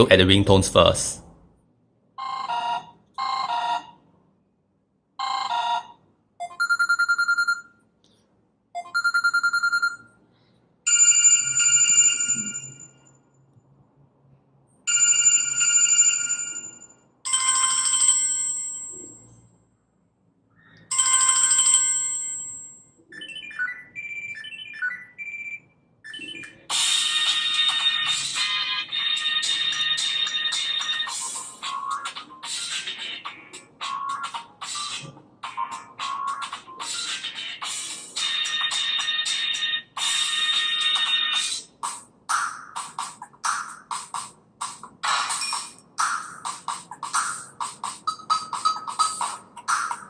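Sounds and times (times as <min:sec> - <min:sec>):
musical ringtone: 0:05.2 - 0:07.7, 0:08.8 - 0:10.1, 0:10.9 - 0:13.0, 0:20.9 - 0:41.7, 0:47.2 - 0:50.0.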